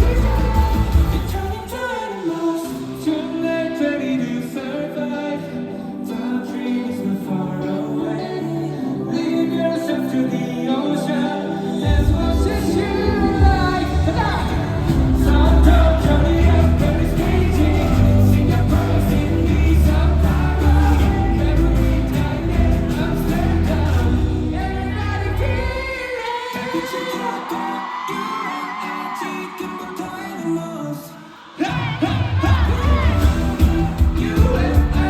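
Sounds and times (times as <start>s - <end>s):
heavy bass: 0.0s - 1.5s, 11.9s - 26.0s, 32.5s - 35.0s
live pop concert music: 0.0s - 35.0s
person singing: 0.0s - 35.0s.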